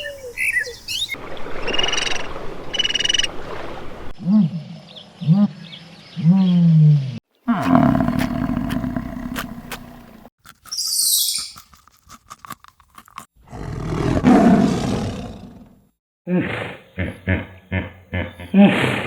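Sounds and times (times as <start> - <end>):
large animal roaring: 6.2 - 10.2, 13.4 - 15.6.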